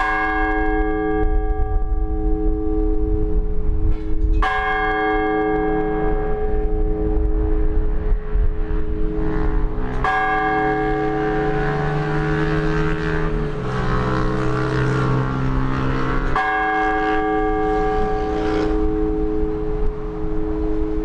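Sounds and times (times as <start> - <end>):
church bells ringing: 0.0 - 21.0
low rumble: 5.5 - 11.5.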